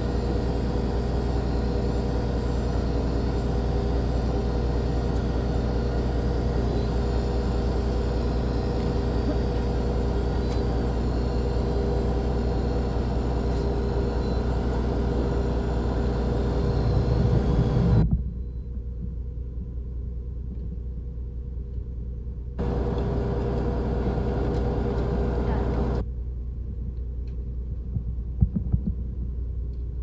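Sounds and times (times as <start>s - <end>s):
boat engine droning: 0.0s - 18.0s, 22.6s - 26.0s.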